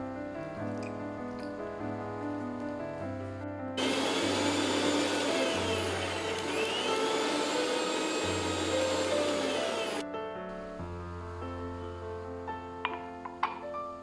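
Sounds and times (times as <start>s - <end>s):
soft background music: 0.0s - 14.0s
electric motor whirring: 3.8s - 10.0s.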